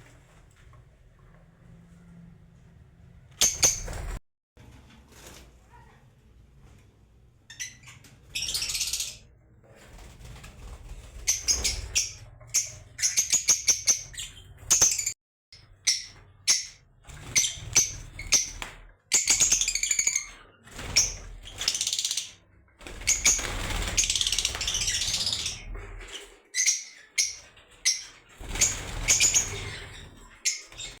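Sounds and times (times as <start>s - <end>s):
lovebirds chirping and screeching: 3.4s - 4.2s, 7.5s - 9.3s, 10.6s - 31.0s.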